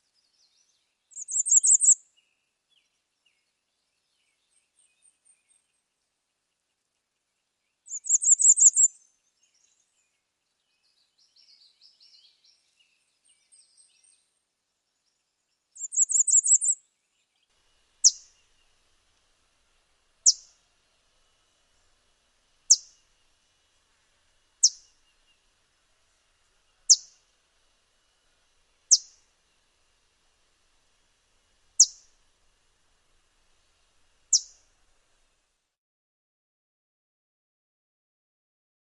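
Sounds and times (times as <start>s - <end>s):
warbler singing high squeaky song: 0.3s - 2.0s, 7.9s - 9.8s, 15.8s - 16.8s, 18.0s - 18.8s, 20.2s - 20.6s, 22.7s - 23.1s, 24.6s - 25.4s, 26.9s - 27.2s, 28.9s - 29.2s, 31.8s - 32.1s, 34.3s - 34.6s
faint bird twittering: 0.3s - 5.7s, 7.9s - 14.2s, 15.0s - 18.8s, 20.2s - 20.6s, 22.7s - 23.1s, 24.6s - 25.4s, 26.8s - 27.2s, 28.9s - 29.2s, 31.8s - 32.1s, 34.3s - 34.6s.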